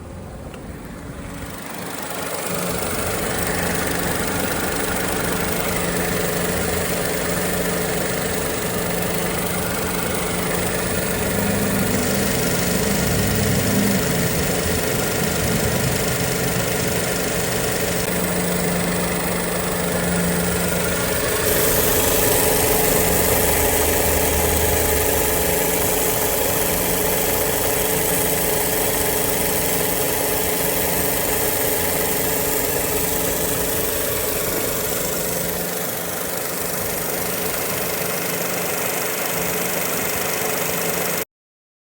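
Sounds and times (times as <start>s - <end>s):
compressor mechanical hum: 0.0s - 40.8s
car engine idling: 0.0s - 41.2s.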